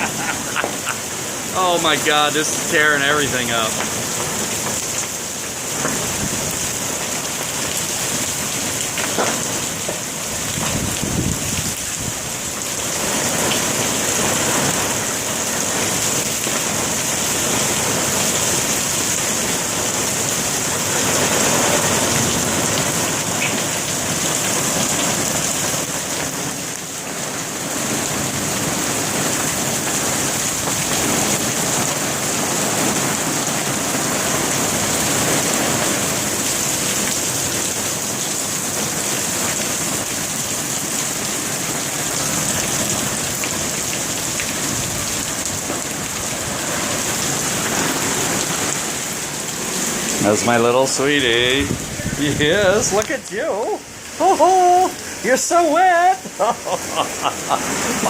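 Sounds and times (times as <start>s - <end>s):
hail and rain impacts: 0.0s - 58.0s.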